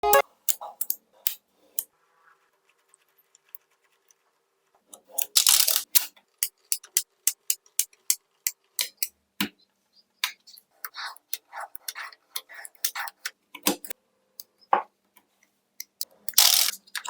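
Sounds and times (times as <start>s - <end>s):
magnetic balls clicking together: 15.8s - 17.0s.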